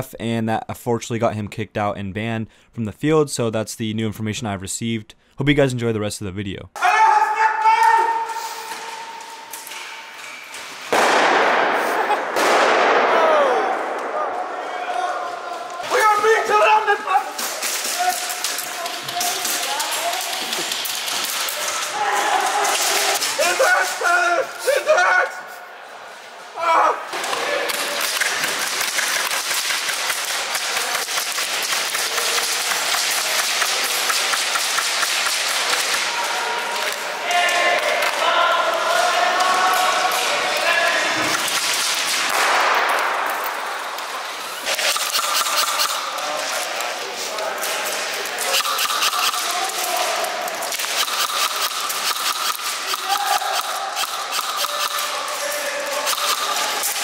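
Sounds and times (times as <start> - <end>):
airsoft gunfire crackle: 10.8 - 14.7, 41.2 - 46.9, 47.7 - 57.0
pellets striking cover: 48.5 - 57.0.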